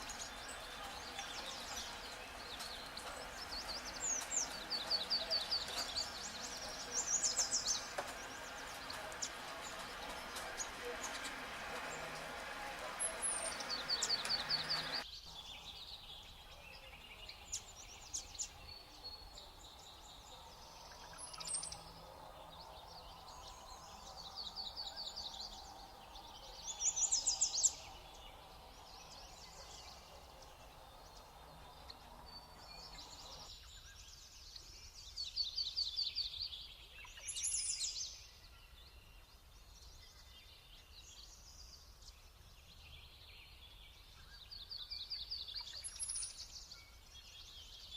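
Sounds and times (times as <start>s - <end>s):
songbirds trilling: 0.0s - 34.1s.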